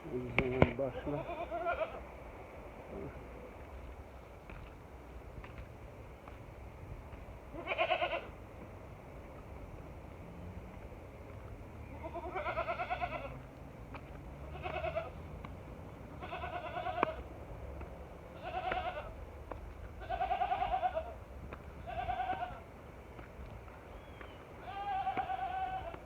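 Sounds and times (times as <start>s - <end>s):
young goat bleating: 0.9s - 2.0s, 7.5s - 8.3s, 12.0s - 13.4s, 14.5s - 15.2s, 16.2s - 17.2s, 18.4s - 19.2s, 20.0s - 21.2s, 21.8s - 22.6s, 24.6s - 26.0s.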